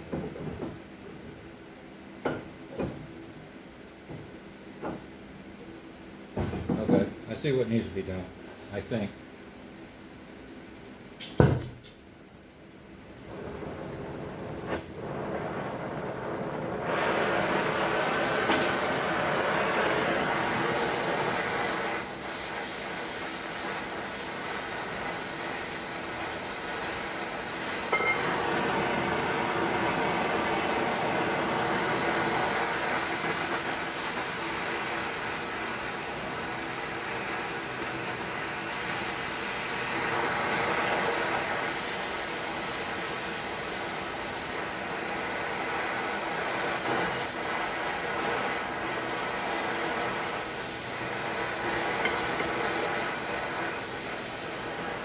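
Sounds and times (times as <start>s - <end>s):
gas torch flame hissing: 13.2s - 55.0s.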